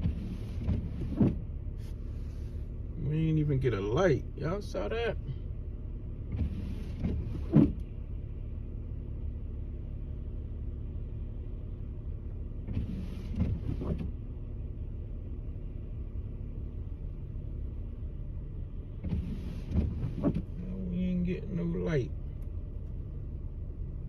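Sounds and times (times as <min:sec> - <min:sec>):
windshield wiper sweep and knock: 0:00.0 - 0:05.4, 0:06.1 - 0:08.1, 0:12.4 - 0:14.4, 0:18.7 - 0:23.5
car engine idling hum: 0:00.0 - 0:24.0.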